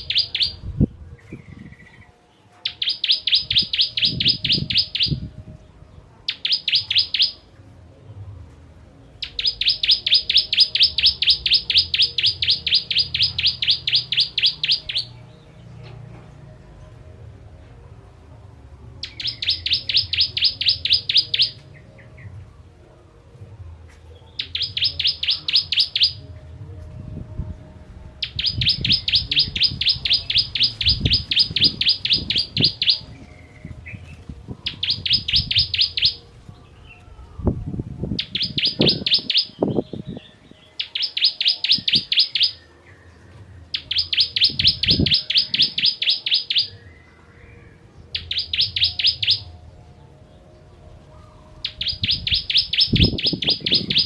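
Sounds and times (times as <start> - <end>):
bird singing a rapid sharp trill: 0.0 - 0.6, 2.6 - 5.2, 6.3 - 7.4, 9.2 - 15.2, 19.0 - 21.6, 24.4 - 26.2, 28.2 - 33.2, 34.6 - 36.2, 38.2 - 42.7, 43.7 - 47.1, 48.1 - 49.5, 51.6 - 54.0.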